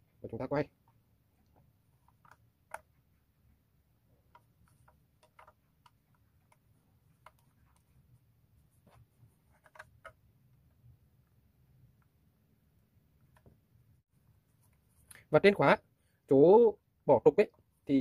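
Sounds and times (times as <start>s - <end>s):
small clicks and taps: 1.4s - 3.0s, 4.2s - 8.0s.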